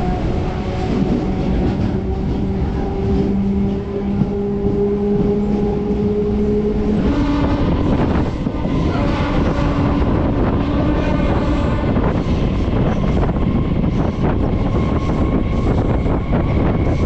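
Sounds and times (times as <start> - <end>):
electric train rumbling: 0.0 - 17.0.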